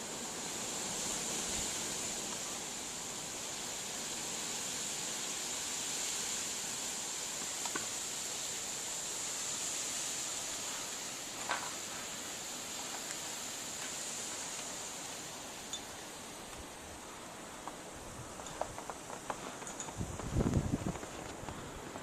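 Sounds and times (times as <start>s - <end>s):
blizzard wind and blowing snow: 0.0s - 22.0s.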